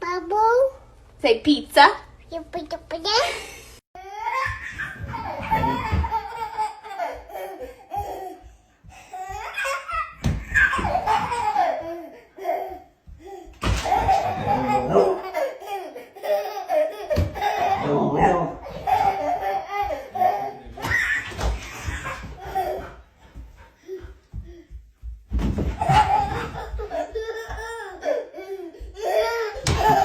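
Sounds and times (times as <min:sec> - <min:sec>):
baby laughing: 0:04.1 - 0:08.5, 0:09.2 - 0:23.0, 0:25.7 - 0:30.0.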